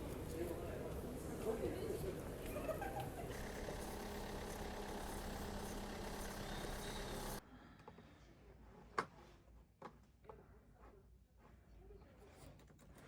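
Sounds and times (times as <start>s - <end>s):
steady mechanical hum: 0.0s - 7.4s.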